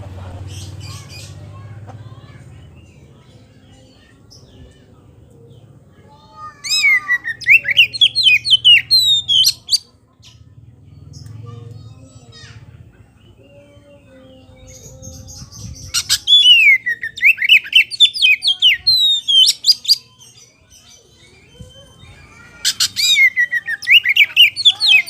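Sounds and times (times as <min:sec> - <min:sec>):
magpie-robin singing: 0:06.1 - 0:10.4, 0:13.2 - 0:25.0.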